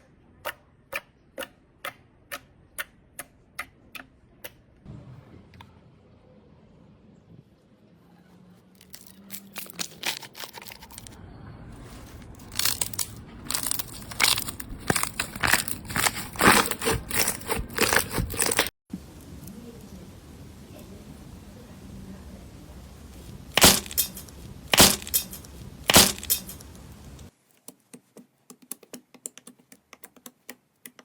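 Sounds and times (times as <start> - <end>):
slime crackling and crunching: 8.8 - 11.2, 11.8 - 18.8, 23.1 - 27.2.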